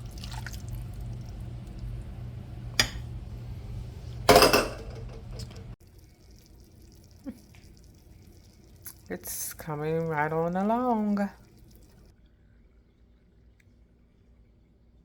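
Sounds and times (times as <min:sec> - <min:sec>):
steady low hum: 0:00.0 - 0:15.0
cookware clatter: 0:04.3 - 0:05.6
cookware clinking: 0:04.3 - 0:05.6.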